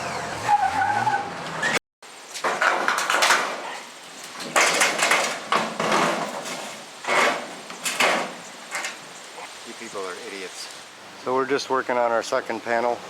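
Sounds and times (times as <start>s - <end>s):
steel panels clattering: 2.4s - 9.1s.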